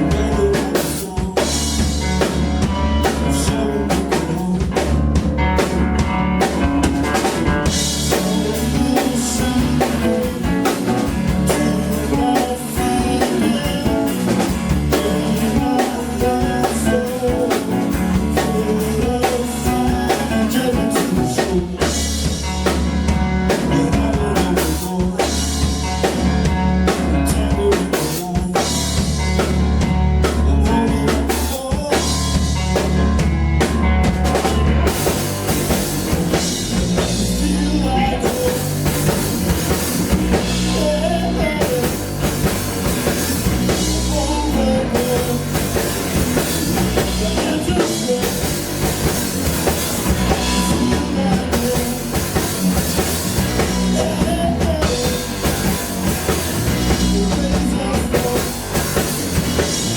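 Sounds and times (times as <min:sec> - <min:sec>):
drum kit beat: 0:00.0 - 0:59.9
heavy low bass: 0:00.0 - 0:59.9.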